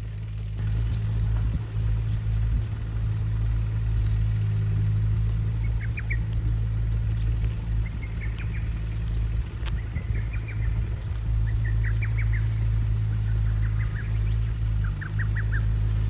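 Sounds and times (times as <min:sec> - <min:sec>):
low mechanical hum: 0:00.0 - 0:16.0
bird chirps: 0:11.4 - 0:16.0.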